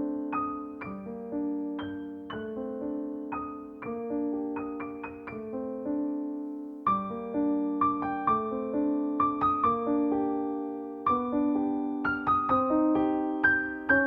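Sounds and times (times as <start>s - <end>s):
gentle piano music: 0.0s - 14.0s.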